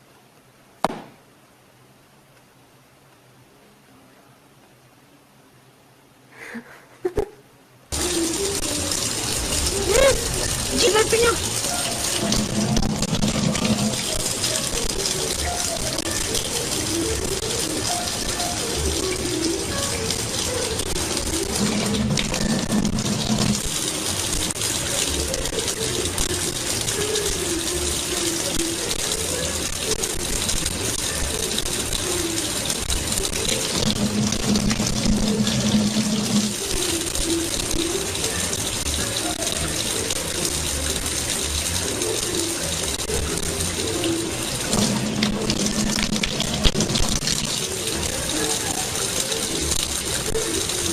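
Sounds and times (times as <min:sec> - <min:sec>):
water running from a tap: 0:07.9 - 0:50.9.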